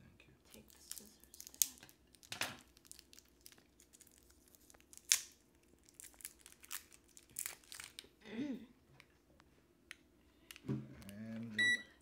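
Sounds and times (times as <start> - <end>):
plastic packaging crinkling and tearing: 0.5 - 8.1.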